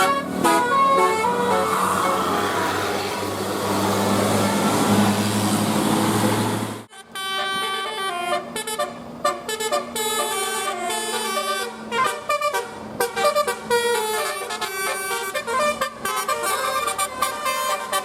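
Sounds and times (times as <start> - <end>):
multi-tone air horn tune: 0.0 - 3.3, 6.9 - 18.0
bus engine and road noise: 0.0 - 18.0.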